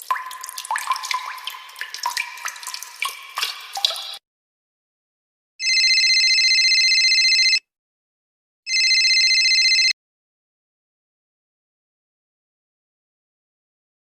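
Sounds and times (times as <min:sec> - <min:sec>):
telephone ringing: 0:05.6 - 0:07.6, 0:08.7 - 0:10.0.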